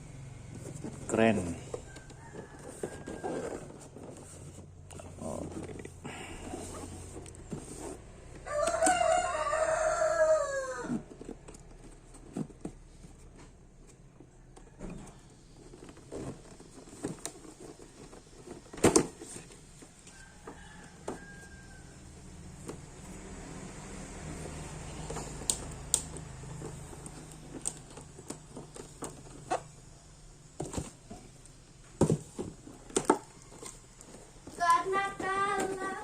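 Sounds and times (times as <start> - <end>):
plastic packaging clicks and knocks: 15.6 - 21.3, 31.9 - 33.8.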